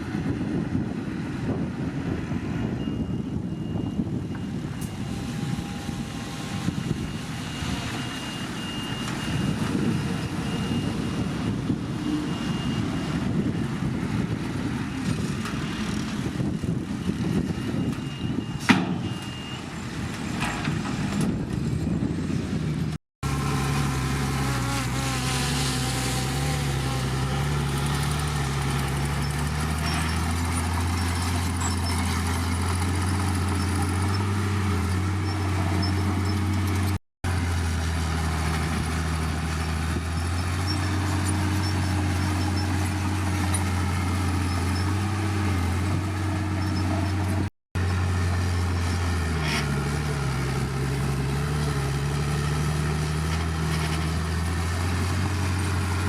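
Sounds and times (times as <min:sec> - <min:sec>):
heavy diesel machinery engine: 0:00.0 - 0:25.0, 0:25.6 - 0:56.0.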